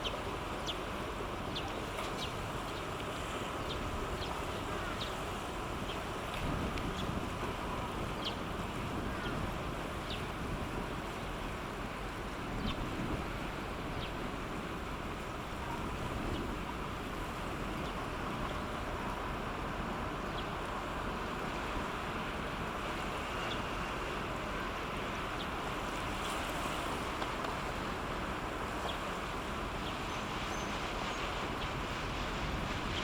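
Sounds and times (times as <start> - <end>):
wind rumble on microphone: 3.1 - 23.6, 25.1 - 33.0.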